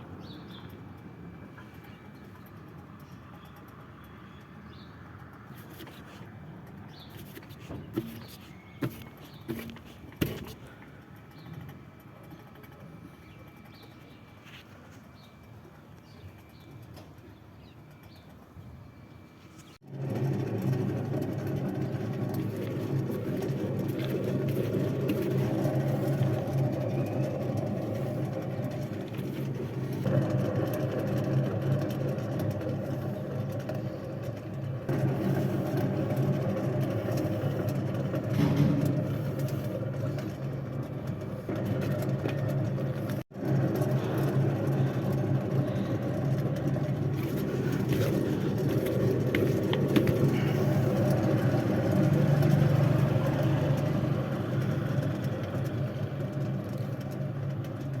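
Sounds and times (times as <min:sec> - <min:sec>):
car wheel bearing droning: 0:19.6 - 0:58.0.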